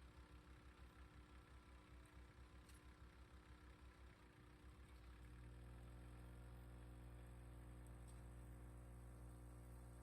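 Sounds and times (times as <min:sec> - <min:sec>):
faint steady hum: 0:00.0 - 0:10.0.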